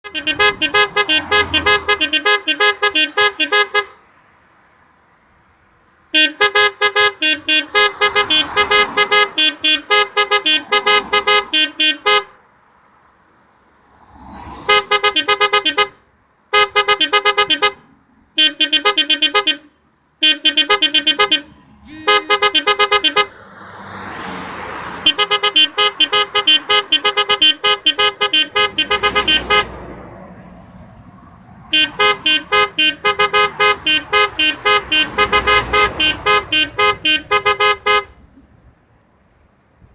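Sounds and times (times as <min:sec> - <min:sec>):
vehicle horn playing tunes: 0:00.0 - 0:04.0, 0:06.1 - 0:12.4, 0:14.6 - 0:23.4, 0:24.9 - 0:30.5, 0:31.6 - 0:38.3.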